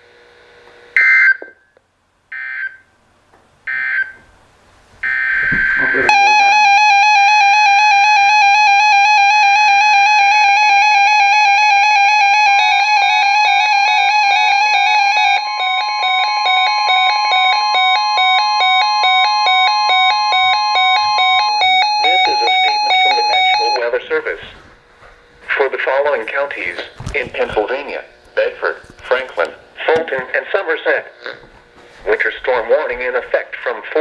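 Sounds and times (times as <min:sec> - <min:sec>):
electronic alert tones: 0:05.1 - 0:07.1, 0:13.5 - 0:24.1.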